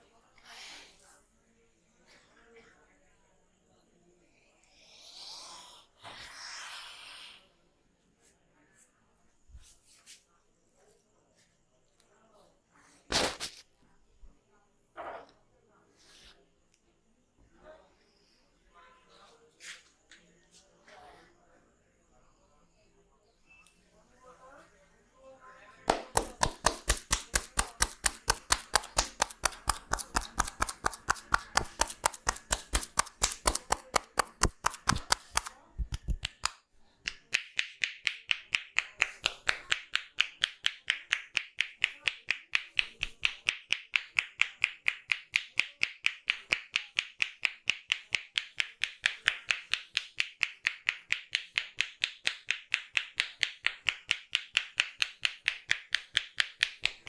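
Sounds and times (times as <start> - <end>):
hands tapping on head: 25.9 - 57.0.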